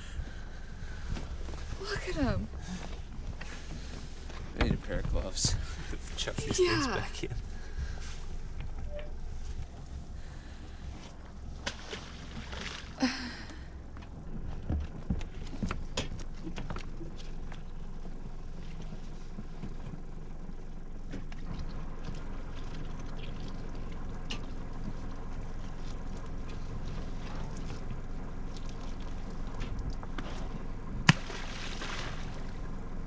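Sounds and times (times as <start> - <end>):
low motor hum: 0.0 - 33.0
splash into water: 31.0 - 32.6.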